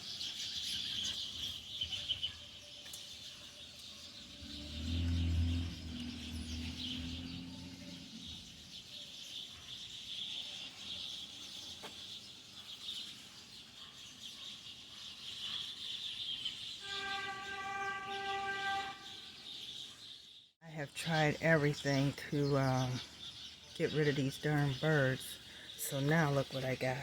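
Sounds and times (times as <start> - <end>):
flock of birds chattering: 0.0 - 20.2, 20.8 - 27.0
horn-like chord: 16.8 - 19.2.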